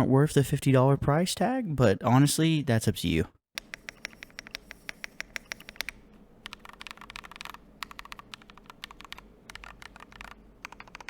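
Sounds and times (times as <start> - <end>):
mechanical keyboard typing: 3.6 - 11.0.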